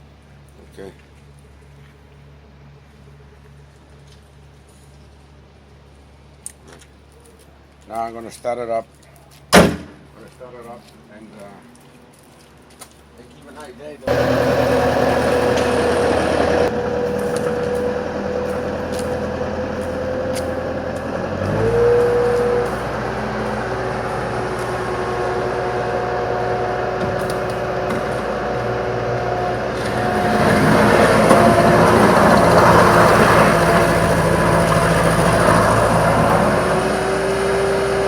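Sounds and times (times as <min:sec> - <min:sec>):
deeper engine rumble: 0:14.1 - 0:38.0
loader engine running: 0:14.1 - 0:38.0.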